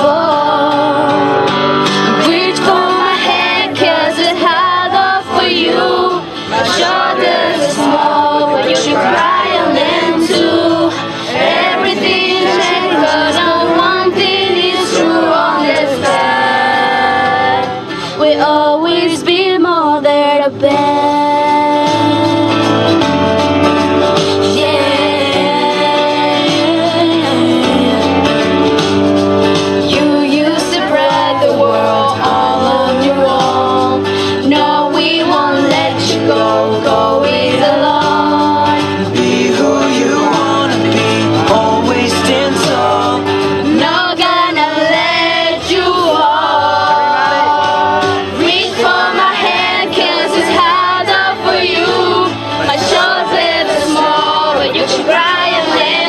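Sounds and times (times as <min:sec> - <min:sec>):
song with singing voices: 0:00.0 - 0:56.0.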